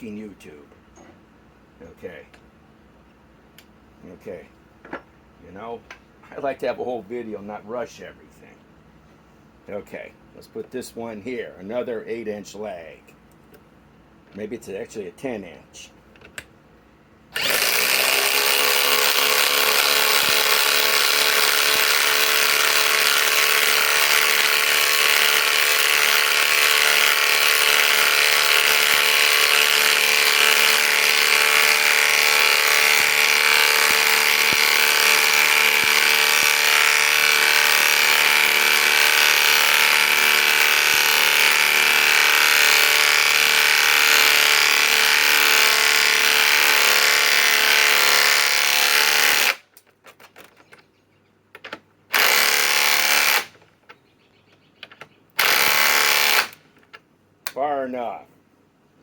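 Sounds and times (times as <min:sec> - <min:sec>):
impact wrench hammering: 0:17.4 - 0:49.6, 0:51.6 - 0:53.6.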